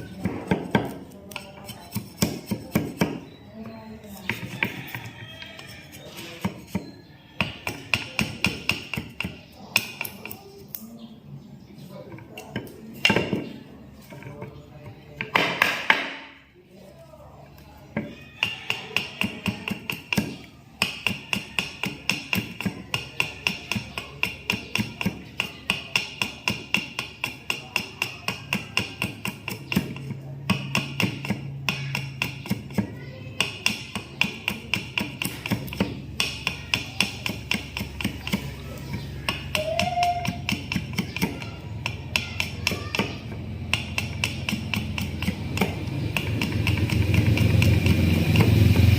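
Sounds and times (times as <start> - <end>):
fast tapping beat: 33.4 - 48.9.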